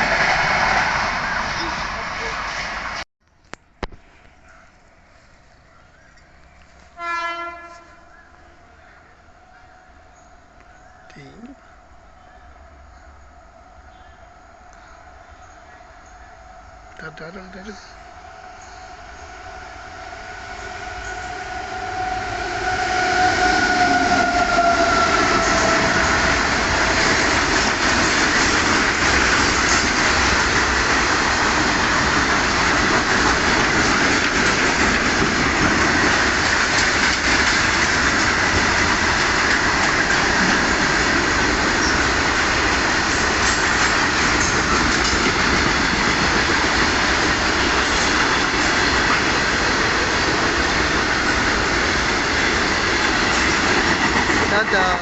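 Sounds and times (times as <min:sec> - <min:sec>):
train horn: 0:06.9 - 0:08.2, 0:18.6 - 0:27.1
train wheels clattering on rails: 0:22.7 - 0:55.0.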